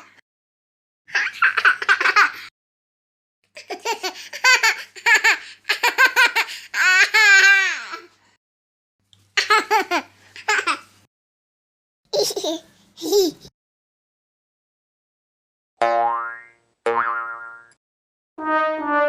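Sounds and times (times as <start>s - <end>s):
baby laughing: 1.1s - 2.5s, 3.6s - 8.1s, 9.4s - 10.9s, 12.1s - 13.5s.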